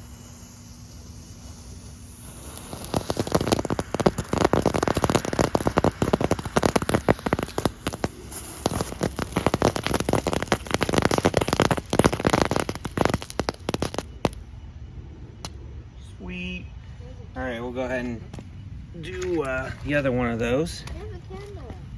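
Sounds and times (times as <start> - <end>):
firework crackling: 0.0 - 14.5.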